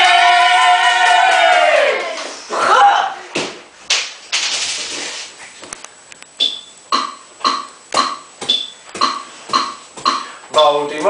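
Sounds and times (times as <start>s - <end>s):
rhythmic beat: 6.4s - 11.0s.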